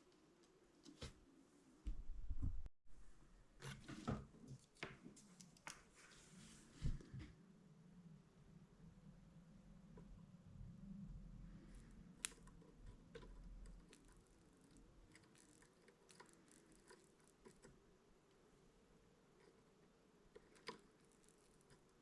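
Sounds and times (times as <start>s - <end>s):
faint low hum: 0.0s - 22.0s
small clicks and taps: 4.5s - 5.9s.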